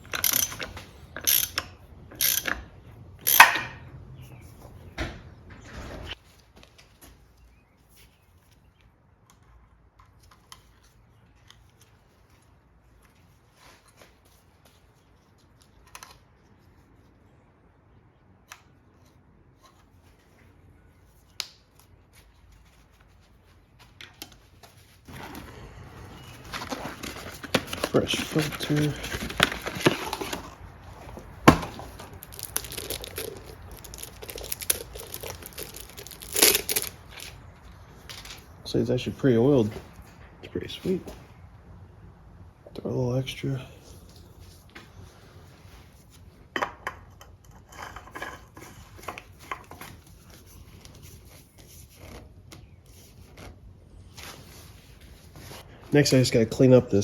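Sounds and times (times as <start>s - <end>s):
metal tools clicking and scraping: 0.0s - 3.9s, 32.1s - 37.3s
packaging crinkling and tearing: 25.1s - 37.5s.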